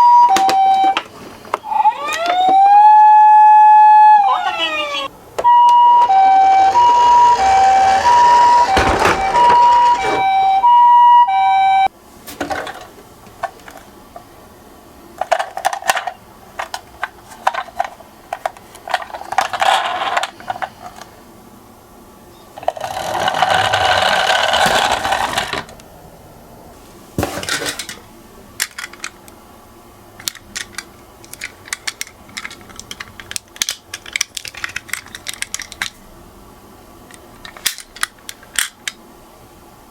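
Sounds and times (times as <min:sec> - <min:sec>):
two-tone ambulance siren: 0:00.0 - 0:01.0, 0:01.6 - 0:11.9
toy cars rolling and clattering: 0:05.4 - 0:10.6, 0:15.2 - 0:21.1, 0:22.6 - 0:25.8, 0:27.4 - 0:28.0, 0:28.6 - 0:29.2, 0:30.2 - 0:36.0, 0:37.1 - 0:39.0.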